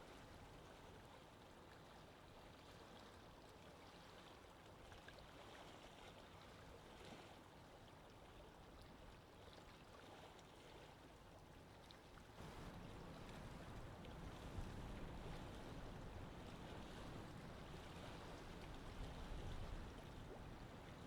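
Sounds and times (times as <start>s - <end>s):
wind: 0.0s - 21.0s
moving ocean water: 12.2s - 21.0s.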